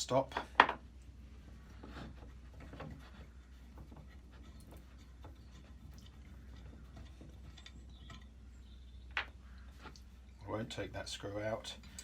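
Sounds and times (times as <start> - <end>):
small metal parts clicking: 11.8 - 12.0.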